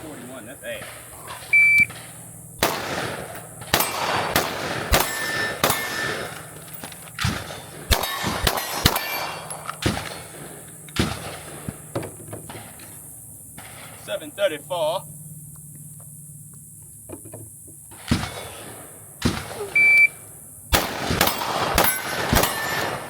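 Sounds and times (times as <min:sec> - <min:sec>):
steel targets clanging: 0:00.0 - 0:10.2, 0:21.2 - 0:23.0
pistol shots: 0:00.0 - 0:11.9, 0:18.0 - 0:20.1, 0:20.7 - 0:23.0.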